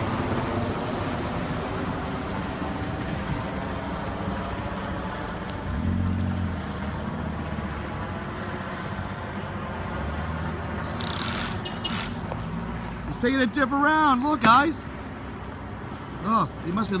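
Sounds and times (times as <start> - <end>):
low-flying aircraft engine drone: 0.0 - 11.6.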